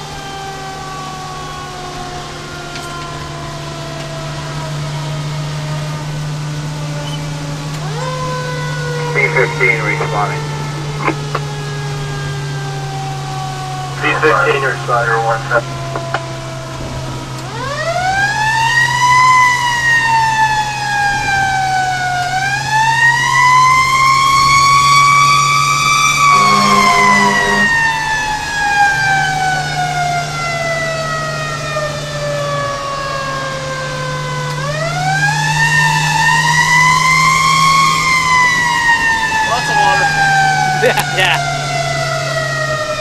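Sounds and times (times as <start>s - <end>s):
low engine drone: 0.0s - 18.8s, 24.5s - 29.6s, 36.0s - 42.6s
fire engine siren wailing: 0.0s - 43.0s
low pulsing tone: 26.2s - 27.8s.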